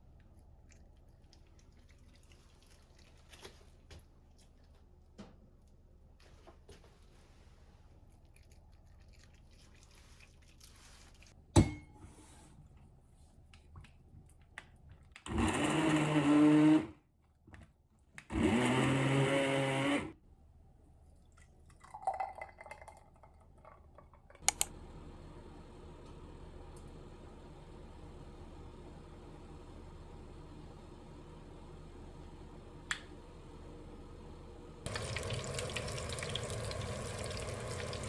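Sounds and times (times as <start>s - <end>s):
electric blender whirring: 15.3s - 17.0s, 18.3s - 20.2s.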